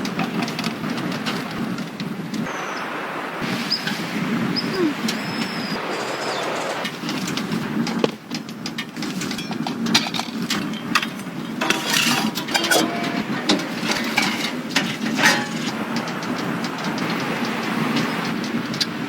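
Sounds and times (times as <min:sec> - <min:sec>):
objects clicking and knocking: 0:00.0 - 0:02.5, 0:06.0 - 0:19.0
rustling: 0:05.8 - 0:16.0
short clinks: 0:08.8 - 0:15.8.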